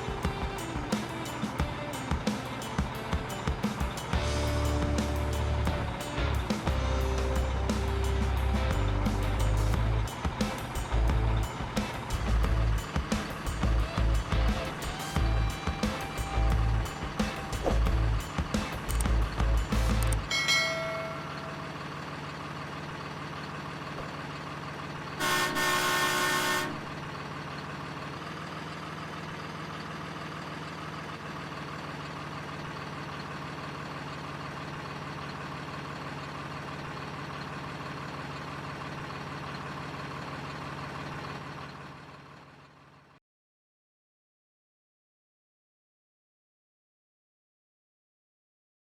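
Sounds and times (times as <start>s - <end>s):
diesel engine idling: 0.0s - 43.2s
truck horn blast: 25.2s - 27.0s.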